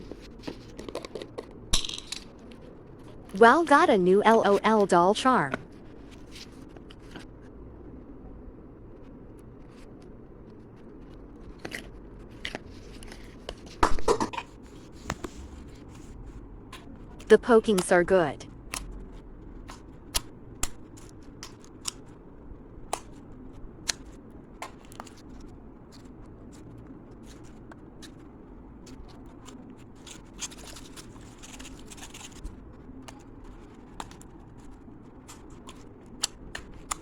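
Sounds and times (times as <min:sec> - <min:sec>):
slime soft crackle: 0:23.0 - 0:37.0.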